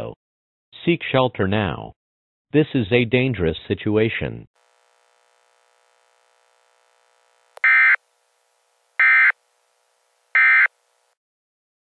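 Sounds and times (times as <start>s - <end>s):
screechy data tone bursts: 7.6s - 8.0s, 9.0s - 9.4s, 10.3s - 10.8s.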